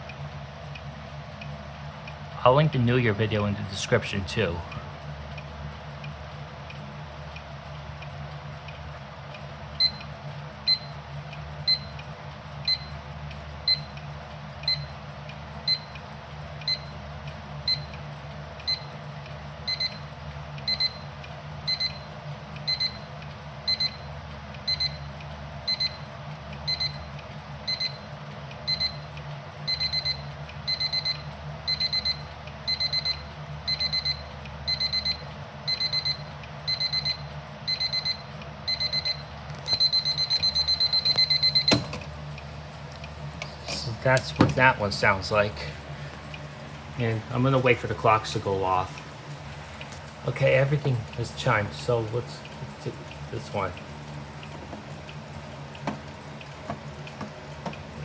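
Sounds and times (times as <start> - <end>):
alarm clock beeping: 9.8 - 11.0, 11.6 - 12.0, 12.7 - 13.0, 13.6 - 14.0, 14.7 - 14.9, 15.6 - 16.0, 16.6 - 17.0, 17.7 - 17.9, 19.7 - 21.1, 21.7 - 25.1, 25.7 - 26.1, 26.7 - 27.1, 27.7 - 28.1, 28.7 - 29.1, 29.7 - 42.1.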